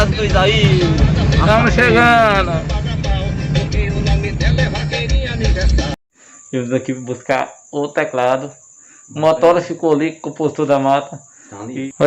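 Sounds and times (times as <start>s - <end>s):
moving vehicle running noise: 0.0s - 5.8s
music with heavy bass beat: 0.0s - 6.0s.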